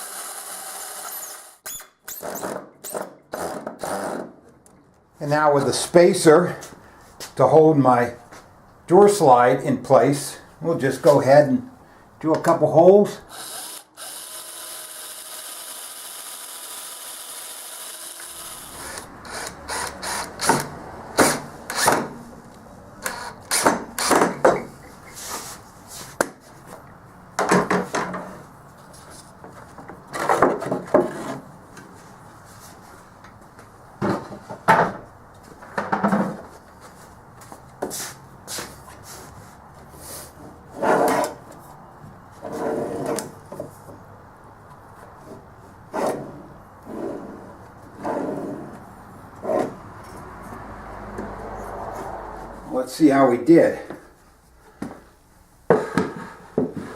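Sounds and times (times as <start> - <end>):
drill boring into wood: 0.0 - 2.4, 13.3 - 20.7.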